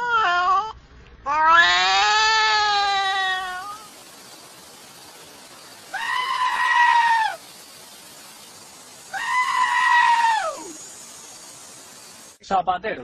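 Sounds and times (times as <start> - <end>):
animal high-pitched cry: 0.0 - 3.9, 5.9 - 7.4, 9.1 - 10.8.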